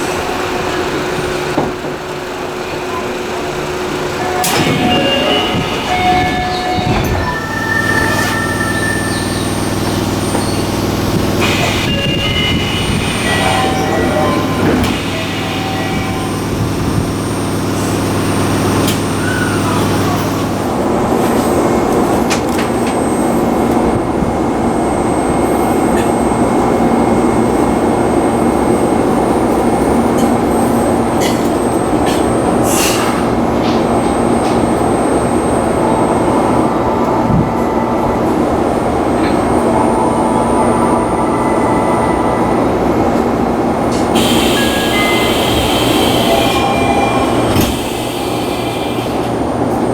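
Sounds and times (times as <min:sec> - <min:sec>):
electric train hum with tones: 0:00.0 - 0:49.9
wheels rumbling on rails: 0:00.0 - 0:49.9.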